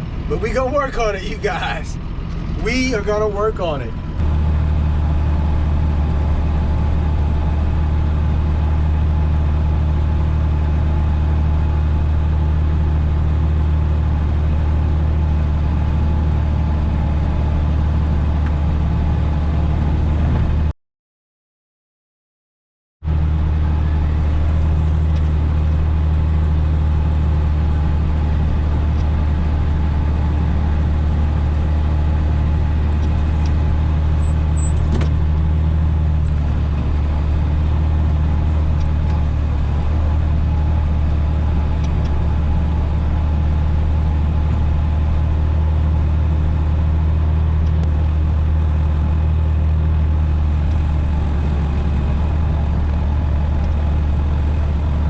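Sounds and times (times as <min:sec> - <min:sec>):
diesel tractor engine droning: 0:00.0 - 0:20.7, 0:23.1 - 0:55.0.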